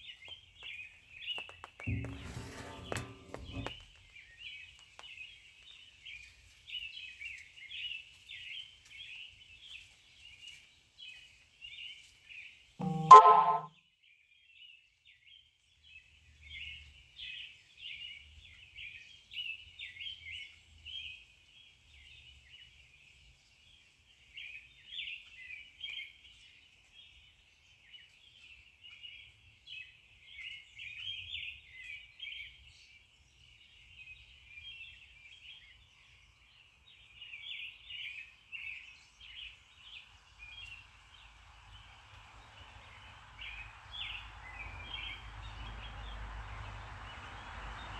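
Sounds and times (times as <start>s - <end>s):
small birds chirping: 25.1s - 47.9s.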